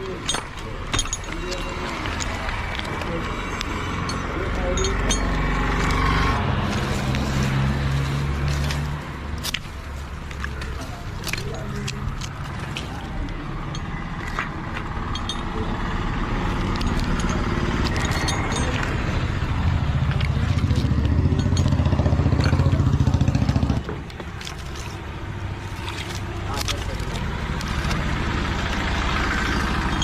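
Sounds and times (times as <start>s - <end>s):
chainsaw engine running: 16.6s - 24.0s.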